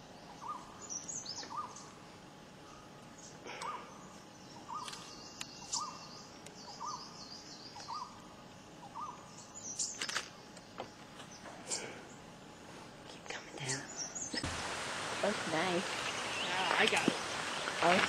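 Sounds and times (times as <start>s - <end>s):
higher bird chirps: 13.7s - 18.0s.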